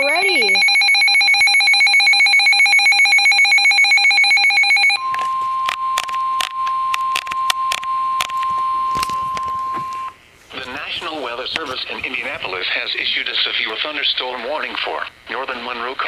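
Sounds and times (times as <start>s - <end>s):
weather radio alert tone: 0.0s - 12.9s
clicks and crackles: 5.1s - 12.6s.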